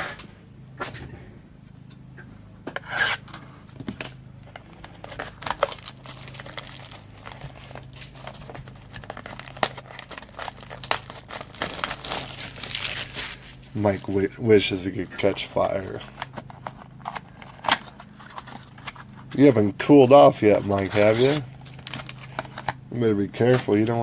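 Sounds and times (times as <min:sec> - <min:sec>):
packaging tearing and crinkling: 0:04.5 - 0:14.3, 0:16.1 - 0:19.2, 0:20.6 - 0:22.8.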